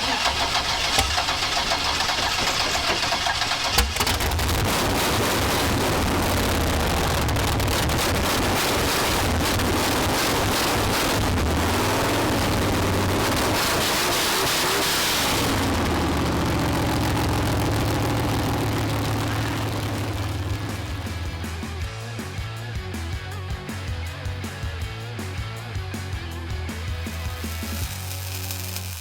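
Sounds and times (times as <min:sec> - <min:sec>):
old car engine idling: 0:00.0 - 0:22.0.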